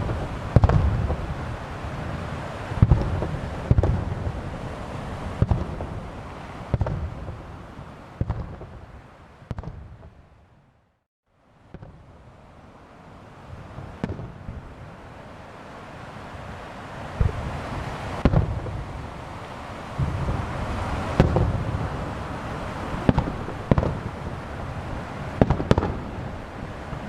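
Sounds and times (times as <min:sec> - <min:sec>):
fireworks booming: 0:00.0 - 0:10.2, 0:13.5 - 0:14.7, 0:17.1 - 0:27.0
wind: 0:00.0 - 0:27.0
surf: 0:13.2 - 0:27.0.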